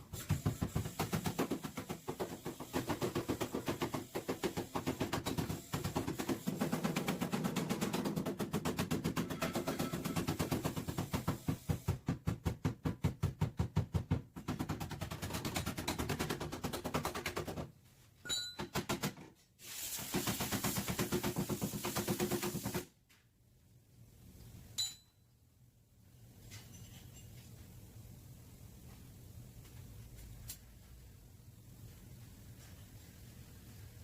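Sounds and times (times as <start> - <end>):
hammering on sheet metal: 0.2 - 17.5.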